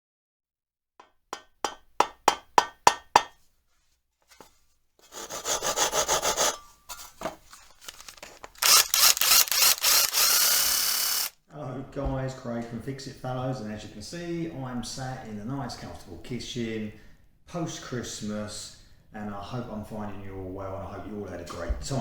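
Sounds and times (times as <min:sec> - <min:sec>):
rhythmic scraping strokes: 0:07.5 - 0:11.3.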